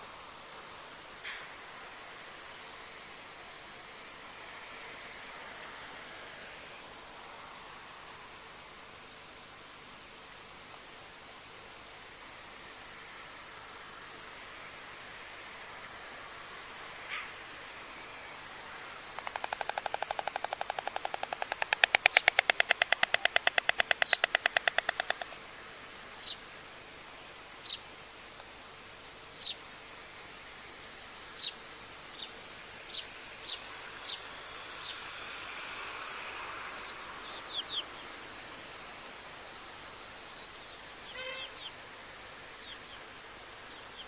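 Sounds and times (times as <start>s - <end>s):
small bird chirping: 19.2s - 25.4s
stork bill clattering: 19.2s - 25.4s.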